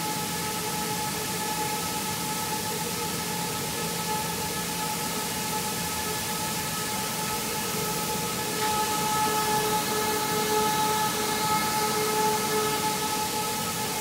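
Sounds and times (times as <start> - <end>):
machinery whining tones: 7.2 - 14.0
milling machinery hissing: 7.3 - 14.0.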